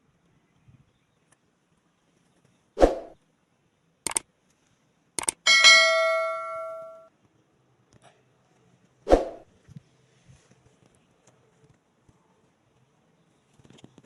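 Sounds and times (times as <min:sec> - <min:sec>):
small metal object clanging: 0:05.5 - 0:07.0.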